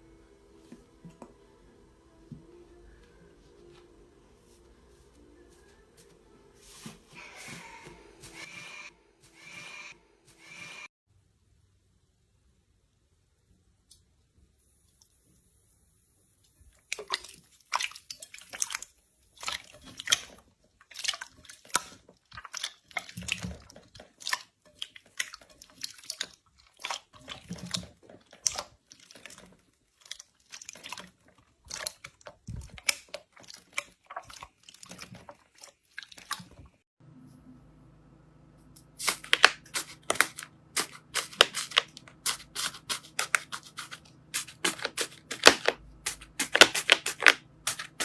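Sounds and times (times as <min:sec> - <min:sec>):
slime popping and squelching: 0:39.0 - 0:48.0.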